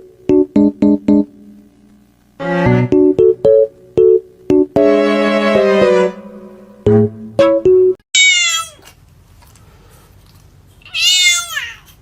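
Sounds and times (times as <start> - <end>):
electronic keyboard notes: 0.0 - 8.0
cat meowing: 8.2 - 8.9, 10.8 - 12.0.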